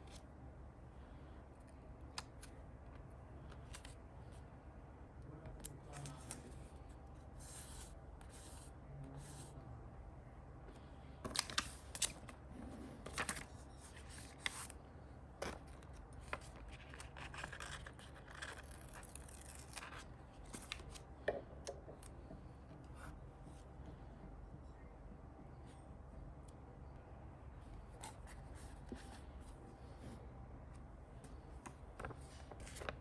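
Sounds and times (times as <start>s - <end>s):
paper rustling: 15.4s - 21.0s, 32.0s - 33.0s.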